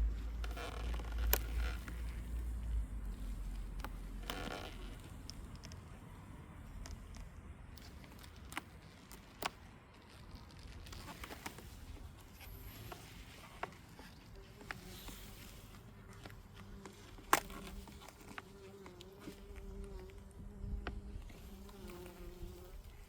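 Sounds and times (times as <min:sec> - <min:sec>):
honeybees buzzing: 0:12.1 - 0:23.0.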